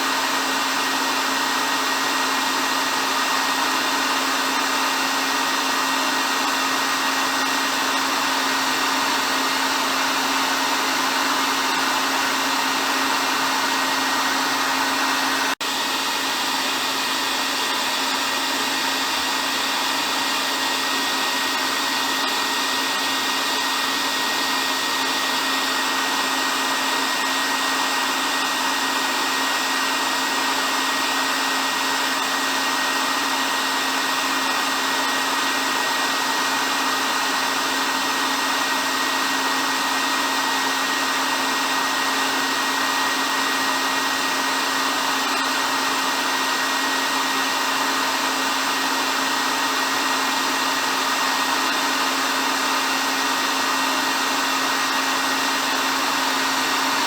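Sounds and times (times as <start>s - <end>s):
hair dryer running: 0.0s - 57.0s.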